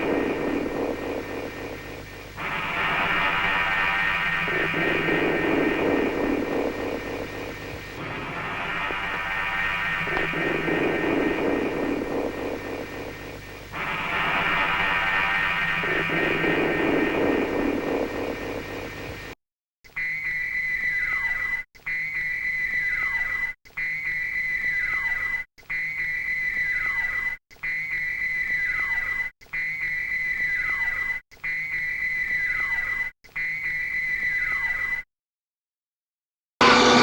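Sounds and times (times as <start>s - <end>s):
electronic signal tone with pitch sweep: 0.0s - 18.3s, 36.6s - 37.0s
electronic command room ambience: 0.0s - 19.4s.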